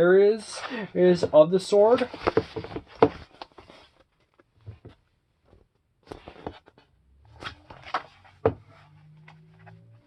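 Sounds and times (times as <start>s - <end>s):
book pages turning: 6.0s - 10.0s.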